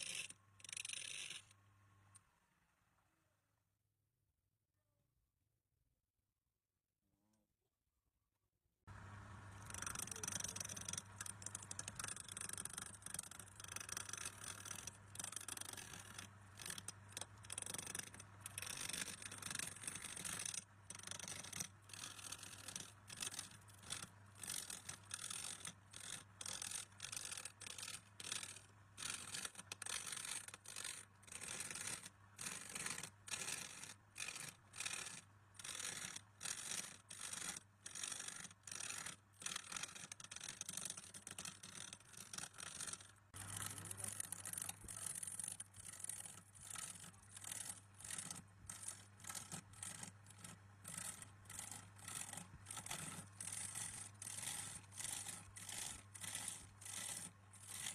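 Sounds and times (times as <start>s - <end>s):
faint steady hum: 8.9s - 57.9s
hand tool scraping wood: 43.4s - 57.9s.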